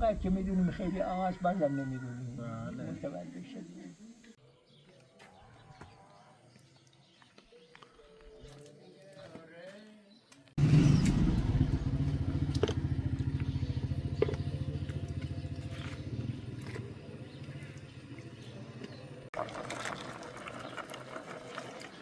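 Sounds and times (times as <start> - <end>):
outdoor background: 0.0 - 22.0
small engine puttering: 10.6 - 22.0.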